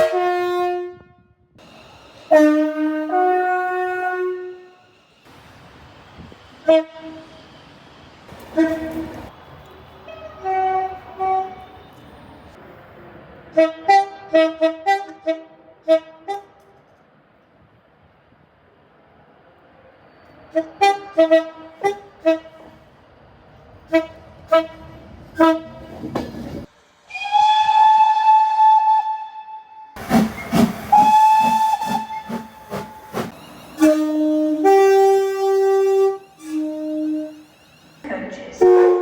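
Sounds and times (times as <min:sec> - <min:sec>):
train horn blast: 0:00.0 - 0:01.5, 0:02.3 - 0:04.9, 0:06.6 - 0:07.4, 0:08.4 - 0:09.3, 0:10.1 - 0:12.1, 0:13.5 - 0:16.8, 0:20.5 - 0:22.8, 0:23.9 - 0:25.9, 0:30.9 - 0:37.4, 0:38.4 - 0:39.0
train horn toots: 0:00.0 - 0:01.5, 0:02.3 - 0:04.9, 0:06.6 - 0:07.4, 0:08.4 - 0:09.3, 0:10.0 - 0:12.1, 0:13.5 - 0:16.8, 0:20.5 - 0:22.8, 0:23.9 - 0:25.9, 0:30.6 - 0:37.4, 0:38.3 - 0:39.0
train running noise: 0:01.6 - 0:28.5, 0:30.0 - 0:39.0.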